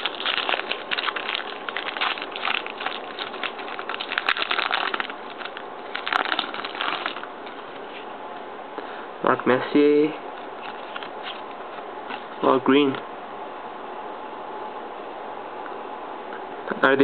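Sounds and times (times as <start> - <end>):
card packs crinkling and rustling: 0.0 - 8.0, 10.6 - 12.4.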